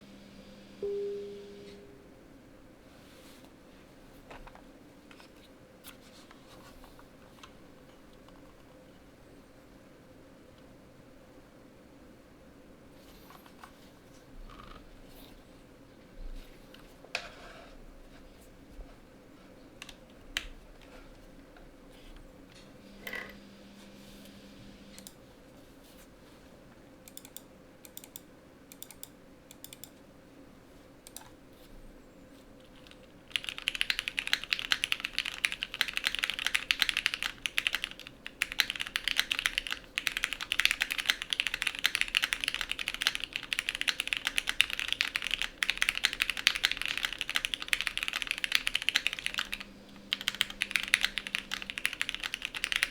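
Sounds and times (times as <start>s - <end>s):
mechanical keyboard typing: 27.1s - 30.0s, 32.7s - 52.9s.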